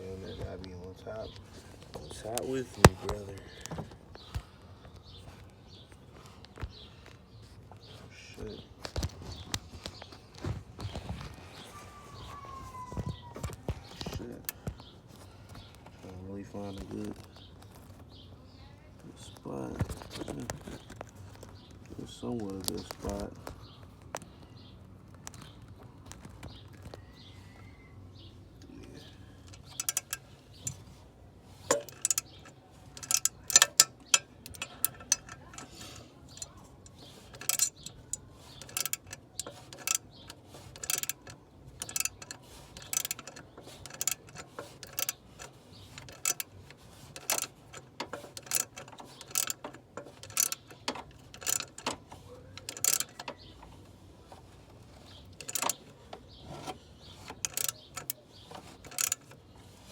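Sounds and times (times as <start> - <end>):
hand ratchet clicking: 29.4 - 30.8, 31.7 - 53.5, 55.3 - 55.9, 56.6 - 59.4.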